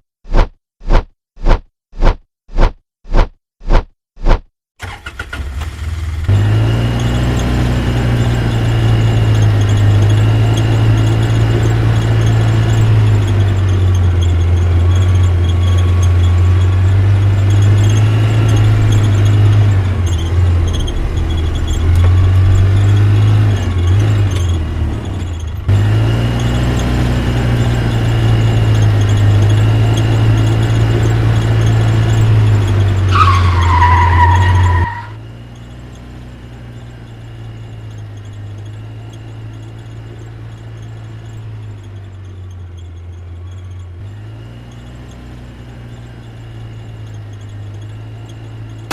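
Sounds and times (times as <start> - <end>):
car engine drone: 4.8 - 48.9
tyres squealing: 27.8 - 35.2.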